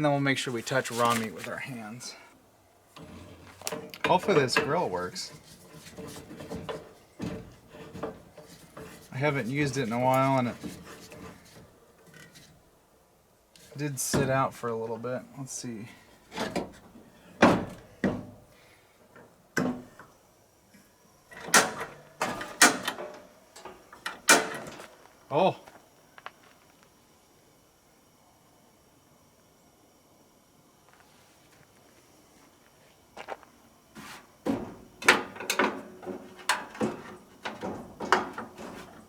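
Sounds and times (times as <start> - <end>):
grill knocking and clacking: 3.0 - 12.4, 34.5 - 39.0.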